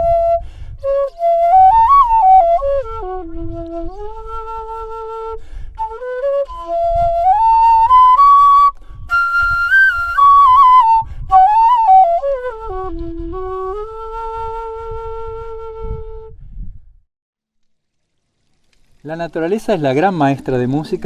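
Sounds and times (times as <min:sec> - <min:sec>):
bamboo flute melody: 0:00.0 - 0:16.6.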